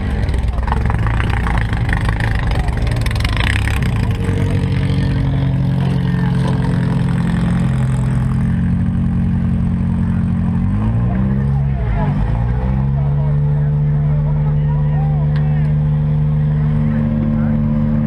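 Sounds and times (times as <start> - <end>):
car engine running: 0.0 - 18.0.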